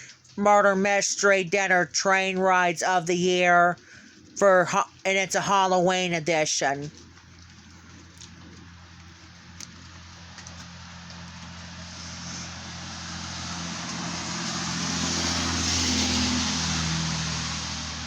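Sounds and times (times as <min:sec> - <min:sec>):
wet rolling noise: 0:00.0 - 0:12.4
diesel locomotive engine drone: 0:06.2 - 0:18.0
rain hiss: 0:07.1 - 0:18.0.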